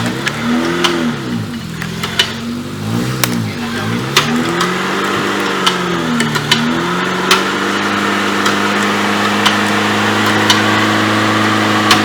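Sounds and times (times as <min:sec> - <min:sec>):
sharp knocks and clicks: 0:00.0 - 0:02.5, 0:04.1 - 0:07.6, 0:08.4 - 0:10.9, 0:11.8 - 0:12.0
car engine revving: 0:00.0 - 0:12.0.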